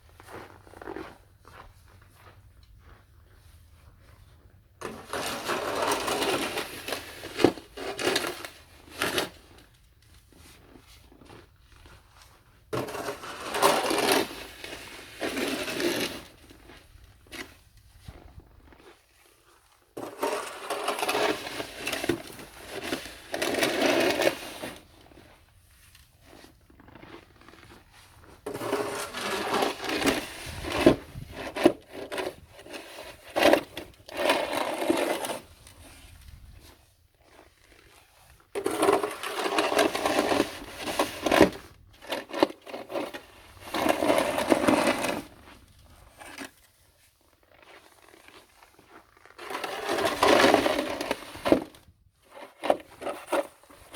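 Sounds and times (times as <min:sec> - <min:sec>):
snow shovel scraping: 0:04.8 - 0:09.6, 0:12.8 - 0:17.6, 0:20.0 - 0:36.8, 0:37.4 - 0:46.7, 0:47.5 - 0:53.9.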